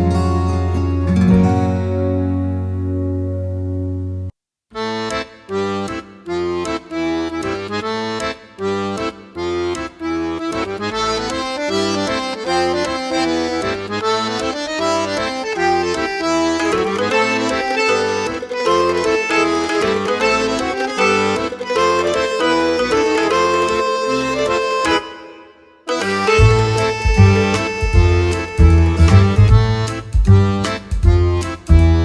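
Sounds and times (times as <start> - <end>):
upbeat folk accordion music: 4.7 - 32.0
steady bass beat: 26.2 - 32.0.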